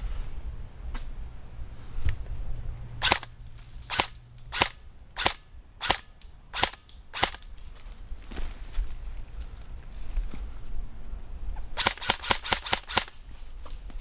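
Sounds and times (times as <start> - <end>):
airsoft gun shots: 3.0 - 3.3, 3.9 - 7.4, 11.8 - 13.2.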